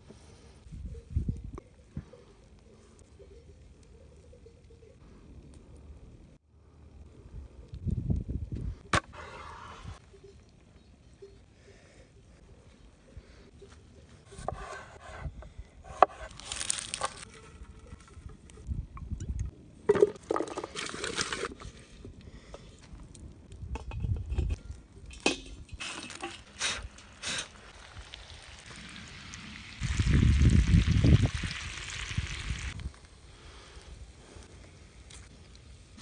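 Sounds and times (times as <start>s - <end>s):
pots and utensils clinking: 23.8s - 27.2s.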